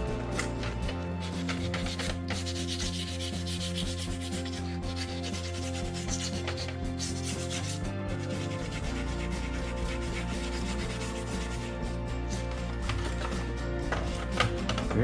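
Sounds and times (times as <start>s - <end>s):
background music with low notes: 0.0s - 15.0s
sandpaper rubbing: 0.0s - 15.0s.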